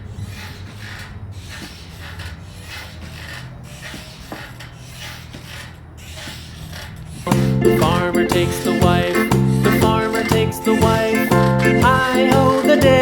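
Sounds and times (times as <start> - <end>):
short rasping rubbing sounds: 0.0 - 8.0.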